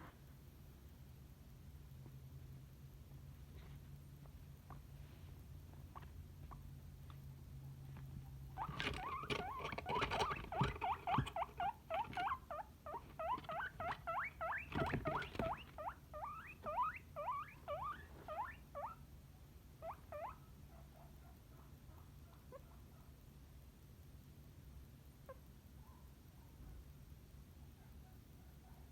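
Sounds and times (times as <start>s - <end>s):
guinea pig squeaking: 5.8s - 7.2s, 8.3s - 19.1s, 19.8s - 20.6s
rustling scrabbling: 7.8s - 15.9s.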